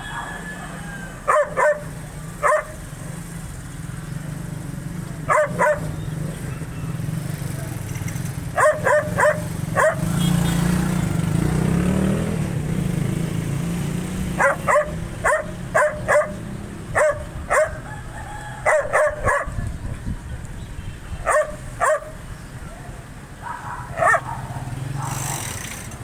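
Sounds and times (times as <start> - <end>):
dog barking: 0.0 - 3.2, 5.2 - 6.7, 8.5 - 10.7, 14.3 - 20.0, 21.1 - 22.2, 22.8 - 25.4.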